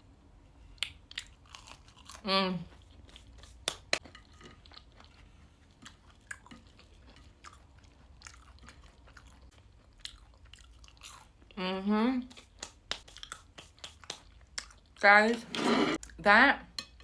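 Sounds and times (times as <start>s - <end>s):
person chewing crunchy food: 0.8s - 11.6s, 12.3s - 15.0s
wet mouth clicks: 12.3s - 14.9s.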